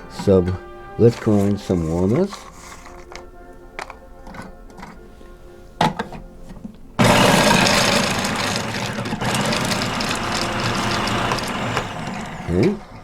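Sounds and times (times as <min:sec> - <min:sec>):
kitchen grinder motor running: 0:07.0 - 0:12.8.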